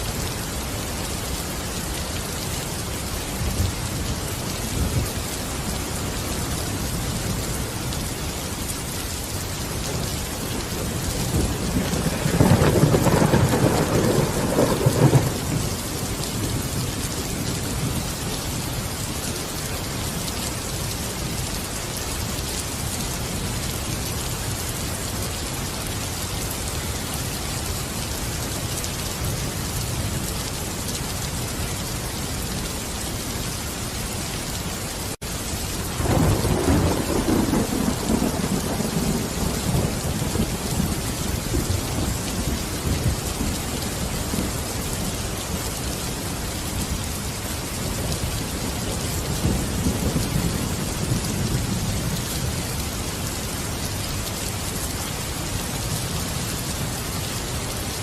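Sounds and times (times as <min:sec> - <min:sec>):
steady rain falling: 0:00.0 - 0:58.0
low thunder rumbling: 0:09.8 - 0:18.1, 0:35.8 - 0:45.1.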